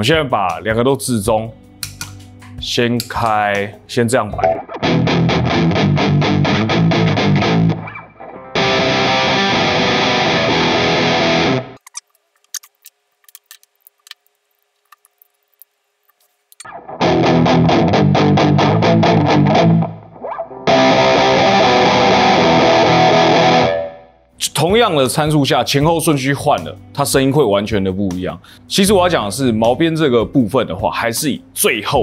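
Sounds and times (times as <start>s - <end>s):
distorted electric guitar riff: 4.4s - 11.8s, 16.6s - 24.2s.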